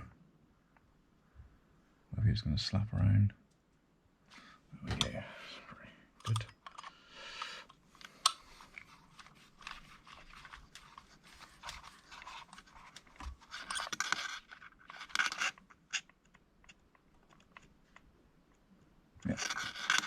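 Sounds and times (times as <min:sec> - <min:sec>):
small parts clicking and scraping: 0:06.2 - 0:20.0.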